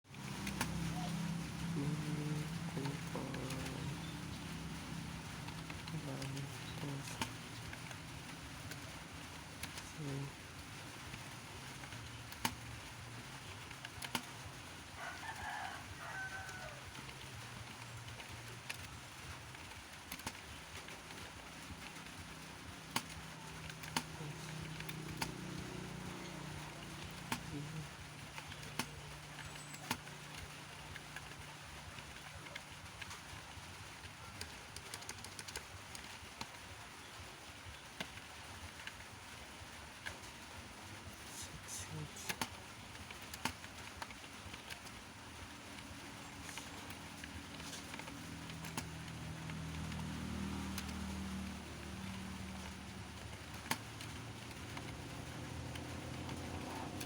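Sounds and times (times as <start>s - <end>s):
steady low hum: 0.1s - 37.4s
sharp clicks: 0.1s - 39.0s, 41.0s - 57.0s
computer keyboard keystrokes: 13.5s - 33.3s, 34.0s - 36.6s, 42.3s - 57.0s
rooster crowing: 14.9s - 17.3s.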